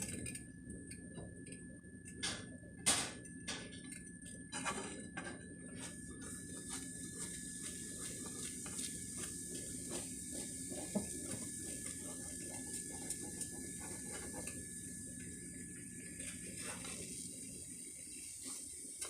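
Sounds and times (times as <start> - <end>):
eggs frying in a skillet: 6.2 - 19.0.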